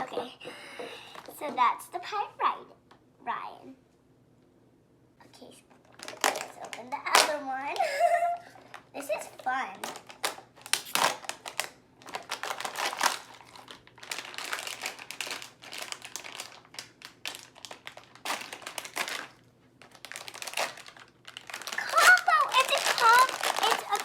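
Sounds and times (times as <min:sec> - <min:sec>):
plastic packaging crinkling and tearing: 0:05.8 - 0:24.0.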